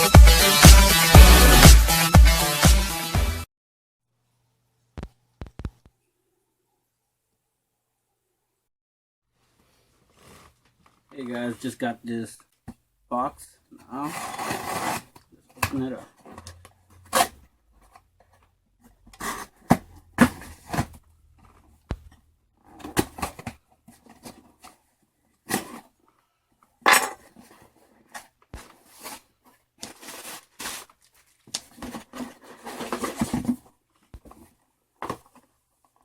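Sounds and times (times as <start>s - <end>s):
cardboard and plastic packaging rustling: 9.4s - 11.8s, 14.4s - 21.9s, 22.7s - 26.1s, 27.1s - 36.0s.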